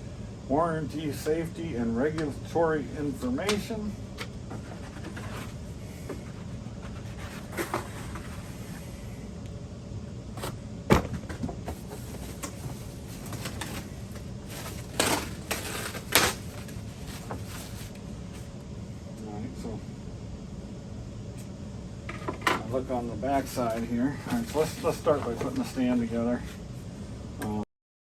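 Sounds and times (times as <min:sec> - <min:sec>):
steady low hum: 0:00.0 - 0:27.7
packaging knocks and rustles: 0:10.4 - 0:17.9.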